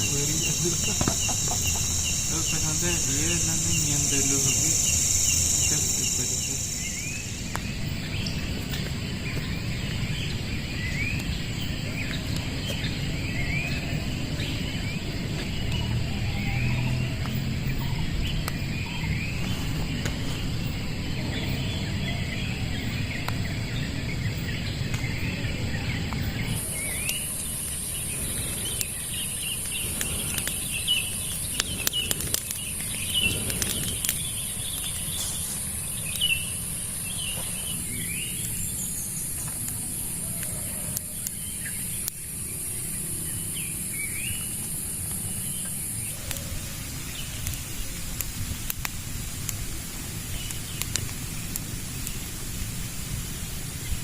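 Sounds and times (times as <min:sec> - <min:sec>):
high-pitched buzz: 0:00.0 - 0:07.7
birds chirping: 0:00.0 - 0:48.0
outdoor ambience: 0:00.0 - 0:54.0.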